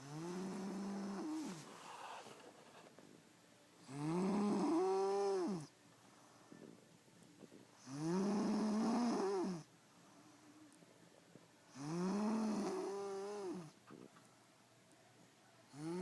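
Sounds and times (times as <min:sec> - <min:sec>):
person snoring: 0:03.9 - 0:05.7, 0:07.8 - 0:09.7, 0:11.7 - 0:13.7, 0:15.7 - 0:16.0
quiet in-breaths: 0:06.0 - 0:07.8, 0:09.7 - 0:11.6.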